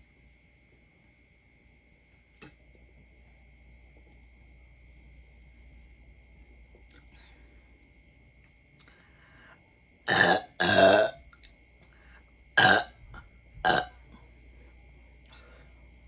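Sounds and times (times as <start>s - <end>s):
woman burping loudly: 10.1s - 11.2s, 12.6s - 13.0s, 13.6s - 13.9s.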